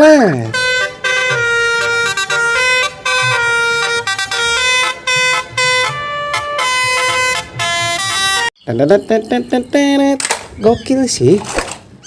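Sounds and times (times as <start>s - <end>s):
musical bus horn tune: 0.0s - 8.5s.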